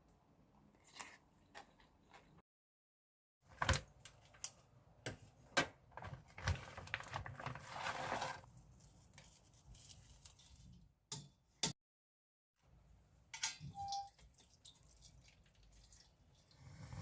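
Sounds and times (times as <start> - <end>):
kitchen clicks and knocks: 13.4 - 14.1.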